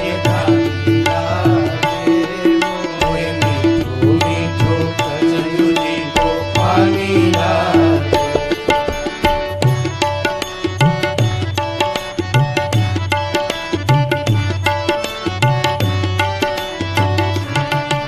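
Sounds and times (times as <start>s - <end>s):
instrumental melody: 0.0s - 18.0s
drum rhythm with deep bass: 6.6s - 9.8s.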